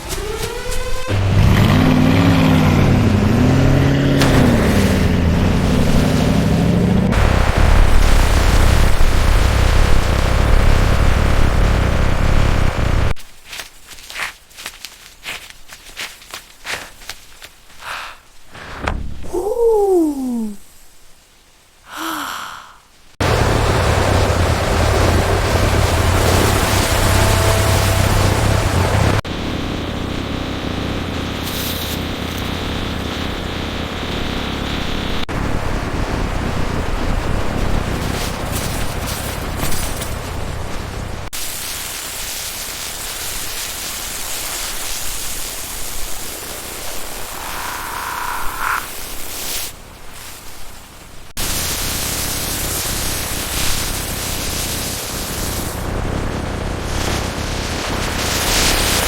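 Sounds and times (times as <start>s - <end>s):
engine running loudly: 1.1s - 13.2s, 23.2s - 35.2s
faint vocal sound: 19.2s - 20.8s, 21.9s - 22.9s.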